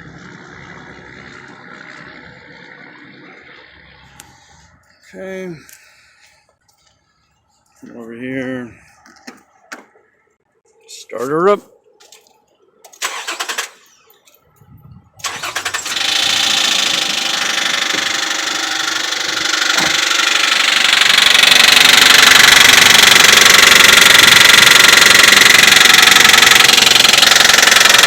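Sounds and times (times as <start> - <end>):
engine starter cranking: 12.9 - 14.1, 15.2 - 28.0
engine running with knocking: 15.3 - 28.0.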